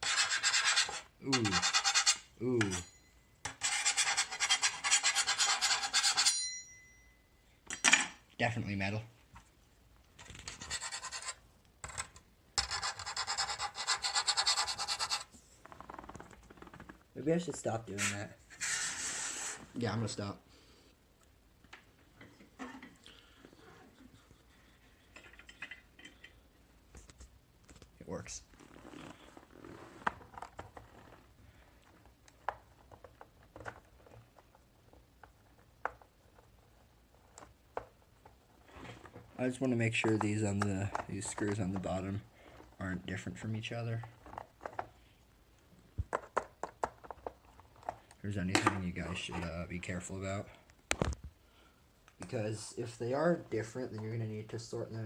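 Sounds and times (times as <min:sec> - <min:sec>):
scratching on metal plate: 0:00.0 - 0:06.4, 0:10.3 - 0:11.4, 0:12.6 - 0:15.3, 0:18.0 - 0:19.6
small hard parts clicking and tapping: 0:25.0 - 0:27.8, 0:39.0 - 0:42.8, 0:46.0 - 0:48.8.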